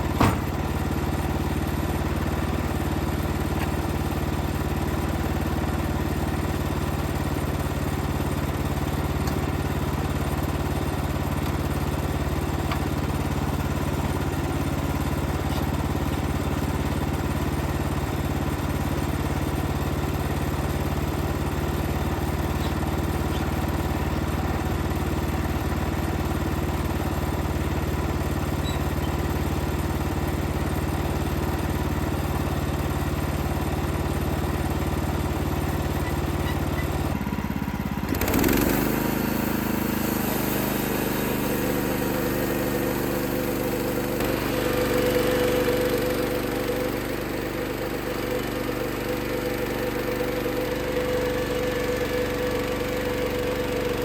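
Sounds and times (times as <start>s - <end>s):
sawmill engine running: 0.0s - 54.0s.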